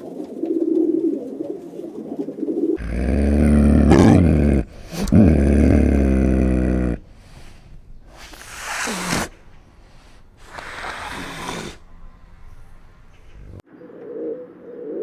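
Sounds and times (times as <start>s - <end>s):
animal breathing noisily: 2.8s - 13.6s.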